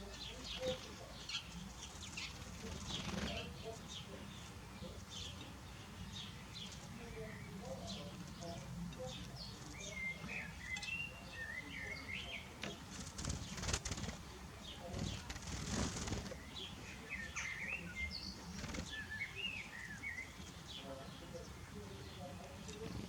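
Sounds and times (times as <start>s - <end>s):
small bird twittering: 0.0s - 21.6s
wing flaps: 1.9s - 3.5s, 12.8s - 16.6s, 18.4s - 19.0s.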